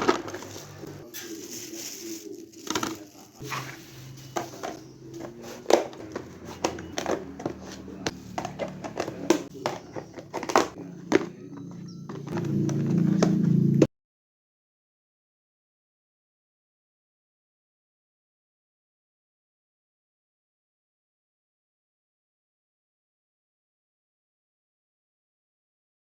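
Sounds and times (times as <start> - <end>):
groceries knocking and rustling: 0.0 - 13.6
soft background music: 0.0 - 13.9.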